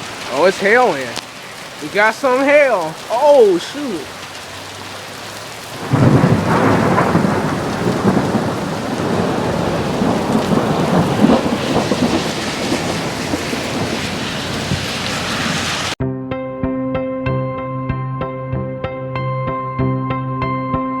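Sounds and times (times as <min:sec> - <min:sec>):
hail and heavy rain pelting: 0:00.0 - 0:16.0.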